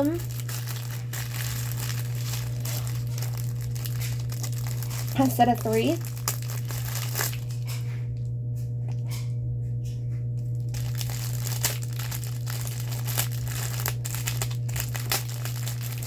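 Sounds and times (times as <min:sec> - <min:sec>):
plastic bags crinkling: 0:00.0 - 0:08.0, 0:10.5 - 0:16.0
steady low hum: 0:00.0 - 0:16.0.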